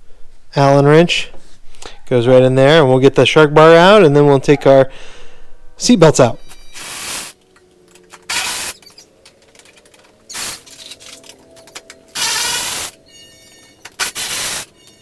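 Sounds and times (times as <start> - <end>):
cordless power tool spinning: 6.8 - 9.1, 9.9 - 13.1, 13.7 - 15.0.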